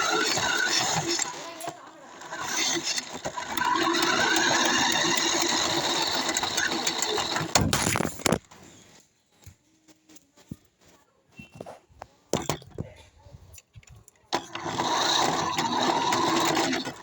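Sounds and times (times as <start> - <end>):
rc car motor whining: 0.0 - 7.7, 14.3 - 17.0.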